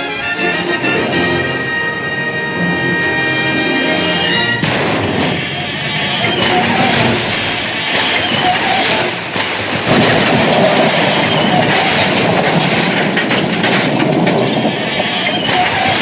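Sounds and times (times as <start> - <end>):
train rushing rumble: 0.0 - 16.0
sharp clattering strikes: 3.5 - 16.0.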